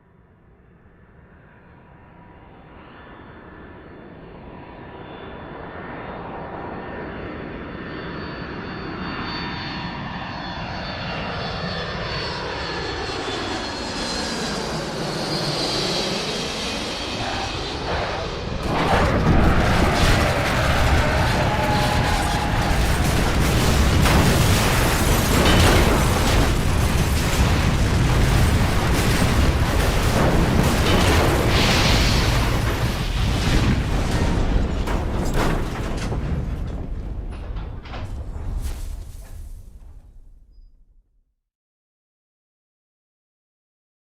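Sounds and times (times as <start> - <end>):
airplane engines approaching: 0.5 - 23.9
loud crash: 17.2 - 40.7.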